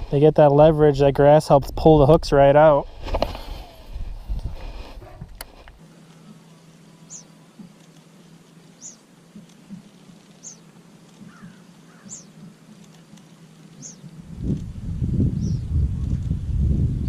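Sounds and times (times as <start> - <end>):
bird high falling call: 11.3 - 12.4.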